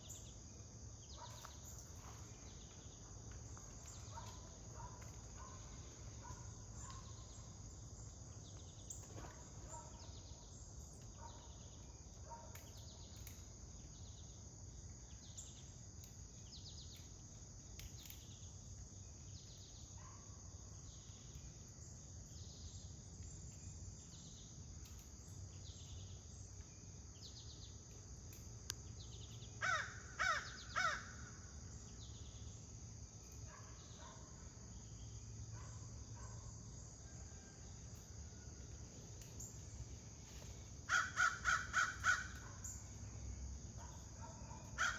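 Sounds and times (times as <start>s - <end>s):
insects chirring: 0.0s - 44.9s
crow calling: 29.6s - 31.3s, 40.9s - 42.7s.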